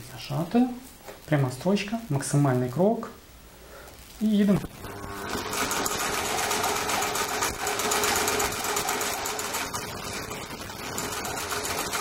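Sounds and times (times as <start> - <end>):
sewing machine stitching: 5.0 - 12.0.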